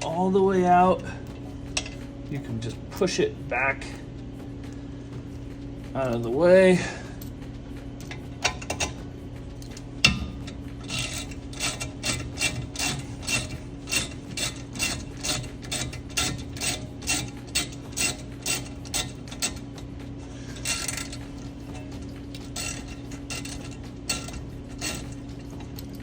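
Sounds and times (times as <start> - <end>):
hand ratchet clicking: 5.8 - 26.0.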